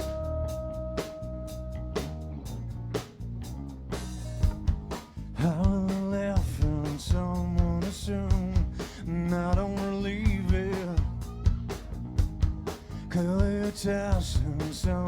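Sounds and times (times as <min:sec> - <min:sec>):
bending guitar lead line: 0:00.0 - 0:03.0
rock band playing live: 0:00.0 - 0:15.0
drum beat: 0:04.4 - 0:15.0.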